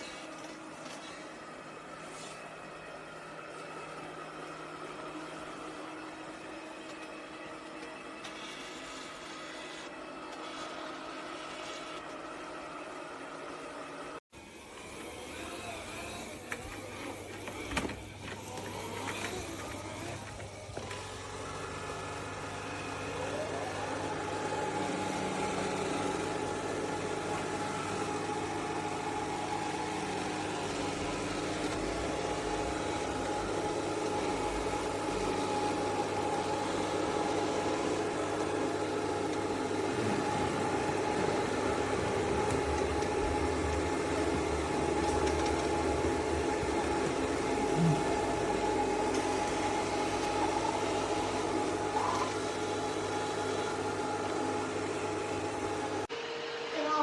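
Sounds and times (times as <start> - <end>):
robot vacuum motor whirring: 14.4 - 52.8.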